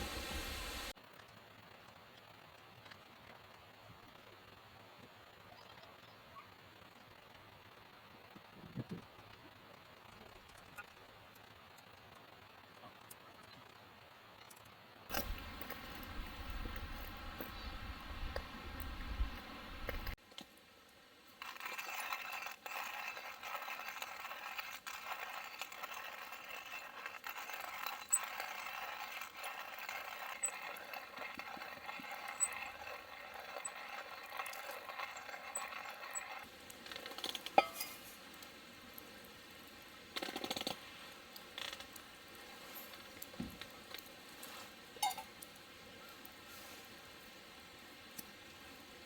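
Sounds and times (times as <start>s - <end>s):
steady hiss: 0.0s - 1.0s, 15.1s - 21.5s, 30.2s - 49.0s
metal cookware clinking: 37.4s - 38.1s, 45.0s - 45.3s.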